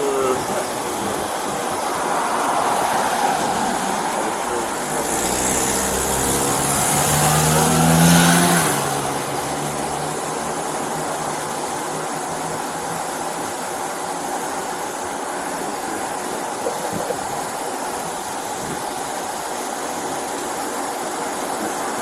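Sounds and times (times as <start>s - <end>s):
traffic noise: 0.0s - 22.0s
car driving past: 1.1s - 13.3s.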